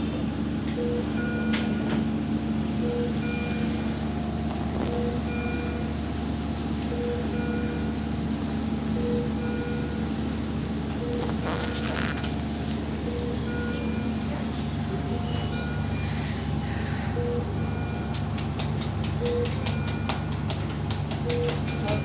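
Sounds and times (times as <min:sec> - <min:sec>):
hum of machines: 0:00.0 - 0:22.0
electronic alarm beeps: 0:02.8 - 0:04.0, 0:04.8 - 0:06.0, 0:06.9 - 0:08.0, 0:09.0 - 0:10.1, 0:11.0 - 0:12.2, 0:13.0 - 0:14.3, 0:15.1 - 0:18.1, 0:21.2 - 0:22.0.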